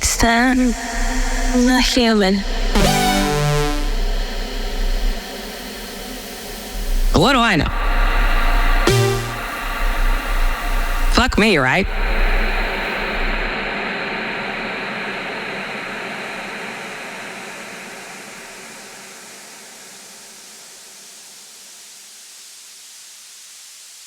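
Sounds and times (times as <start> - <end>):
synth and voice reverb tail: 1.5 - 4.2, 7.2 - 9.7
steady hiss: 19.9 - 24.0.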